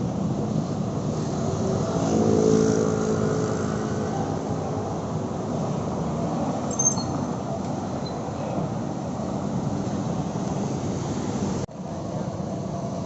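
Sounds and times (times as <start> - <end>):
street traffic: 0.0 - 13.0
vehicle engine passing by: 1.0 - 5.0.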